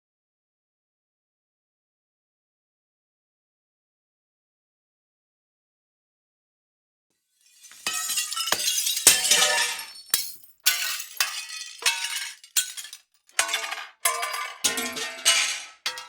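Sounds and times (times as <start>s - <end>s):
glass smashes with tinkling debris: 7.4s - 16.0s
plate glass crashing and shattering: 7.4s - 16.0s.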